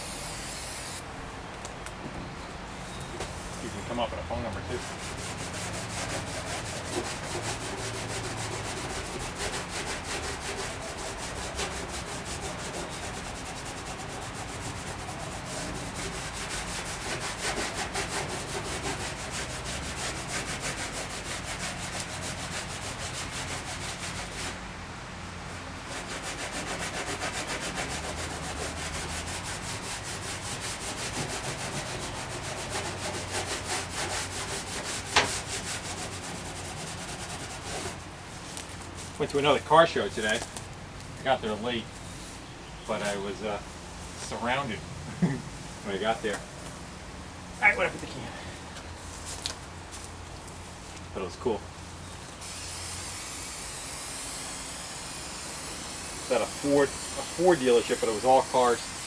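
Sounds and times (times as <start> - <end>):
steel wool scrubbing metal: 4.6 - 24.6, 25.9 - 40.4, 52.4 - 59.0.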